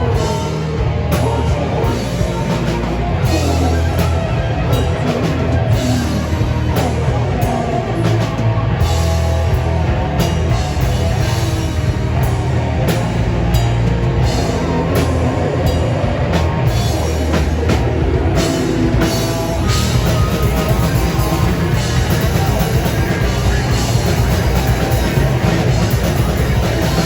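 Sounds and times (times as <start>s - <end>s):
drum kit beating: 0.0s - 27.0s
live rock band playing: 0.0s - 27.0s.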